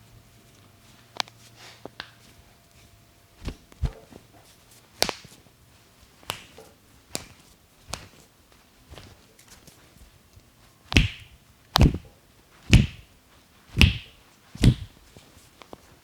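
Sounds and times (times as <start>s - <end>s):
hands slapping on skin: 3.4s - 4.2s, 5.0s - 5.4s, 6.2s - 8.3s, 8.9s - 9.2s, 10.9s - 13.1s, 13.7s - 15.0s
dull thuds: 10.9s - 12.1s, 12.7s - 13.1s, 13.7s - 15.0s.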